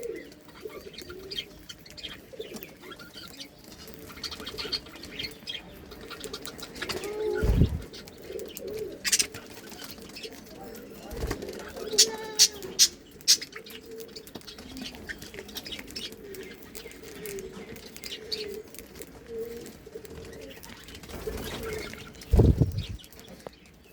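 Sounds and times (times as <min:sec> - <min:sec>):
budgerigars chattering: 0:11.8 - 0:13.8.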